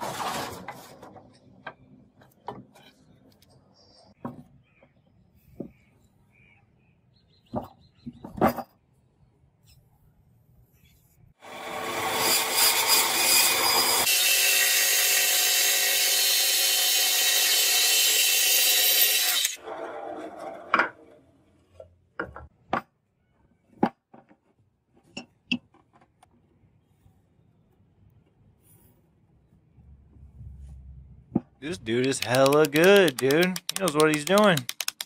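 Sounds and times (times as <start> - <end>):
sharp taps: 31.8 - 35.0.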